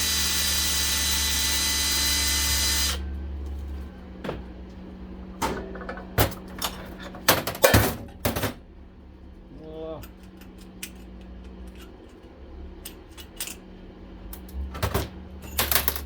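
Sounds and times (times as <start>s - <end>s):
power drill running: 0.0s - 3.0s
metal parts clicking and knocking: 14.4s - 16.0s.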